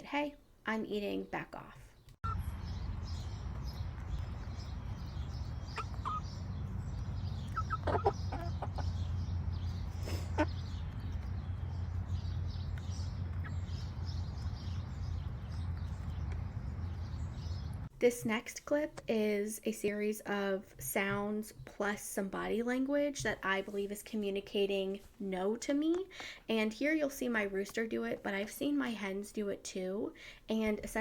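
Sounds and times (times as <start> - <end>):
chick giving sharp calls: 5.7 - 6.4, 7.4 - 9.2, 9.9 - 10.8.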